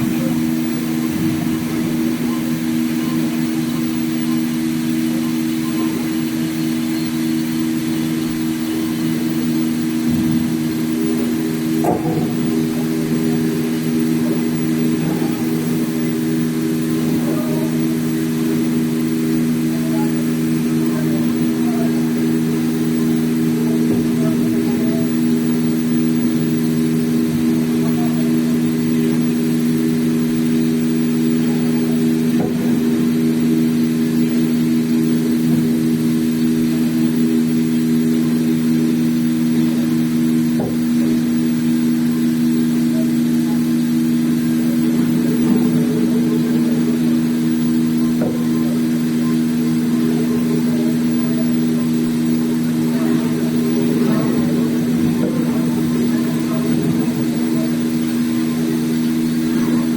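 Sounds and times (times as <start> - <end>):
machine running with steady hum: 0.0 - 59.9.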